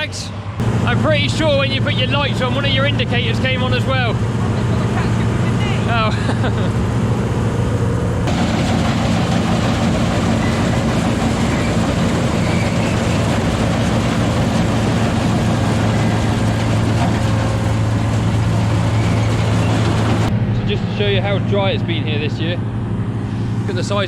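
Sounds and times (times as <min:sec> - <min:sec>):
combine harvester engine: 0:00.0 - 0:24.0
harsh rushing machine noise: 0:06.6 - 0:20.5.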